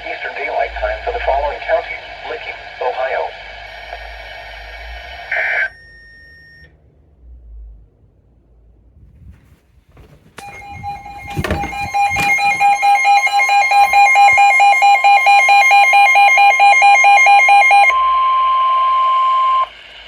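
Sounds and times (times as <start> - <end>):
knocks: 9.9 - 13.0
steady alarm tone: 10.4 - 18.3.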